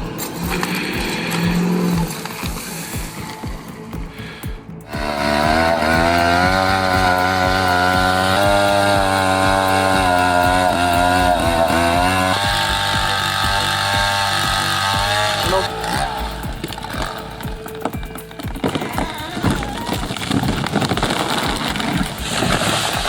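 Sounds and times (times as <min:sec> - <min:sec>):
chainsaw running: 0:04.9 - 0:23.0.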